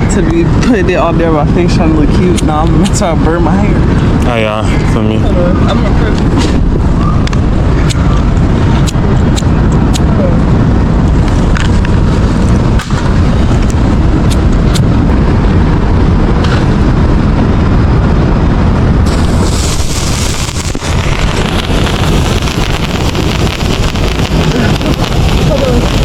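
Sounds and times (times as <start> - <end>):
wind buffeting microphone: 0.0 - 26.0
firework spraying sparks: 11.1 - 14.9, 19.0 - 26.0.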